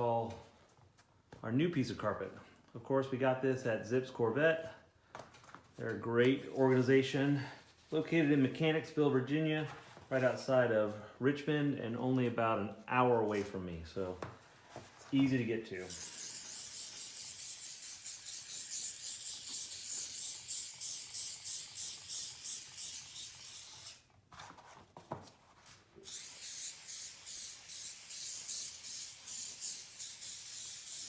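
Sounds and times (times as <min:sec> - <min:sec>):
aerosol spray can hissing: 0:15.8 - 0:24.0, 0:26.0 - 0:31.0.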